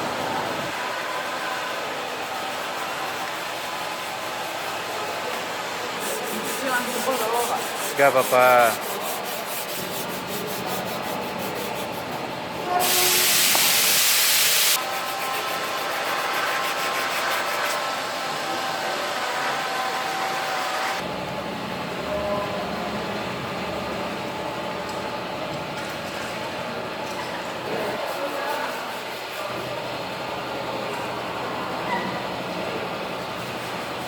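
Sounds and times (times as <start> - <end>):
sanding car body panel: 6.0 - 12.2, 14.7 - 18.0
loud hiss: 12.8 - 14.9.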